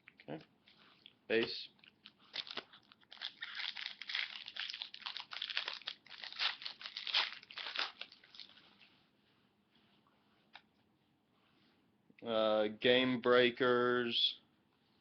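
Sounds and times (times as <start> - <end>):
plastic wrapper crinkling: 1.8 - 8.6.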